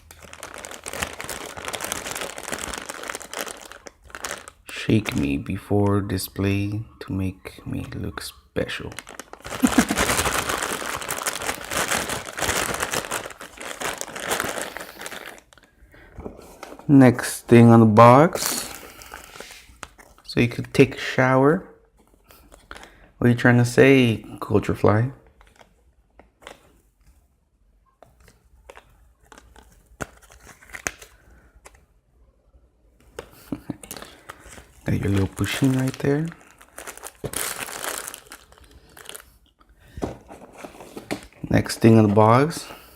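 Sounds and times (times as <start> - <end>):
plastic packaging crinkling: 0.0 - 5.4, 8.7 - 15.8, 28.2 - 31.8, 33.1 - 42.6.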